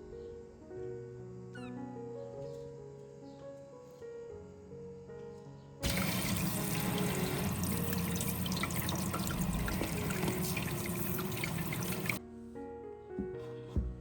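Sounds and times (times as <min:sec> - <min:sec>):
running water splashing: 0:05.8 - 0:12.2.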